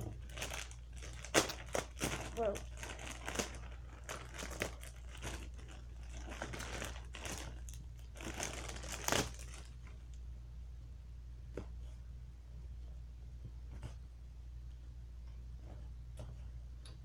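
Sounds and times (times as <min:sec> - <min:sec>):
packaging rustling and crinkling: 0:00.0 - 0:10.1.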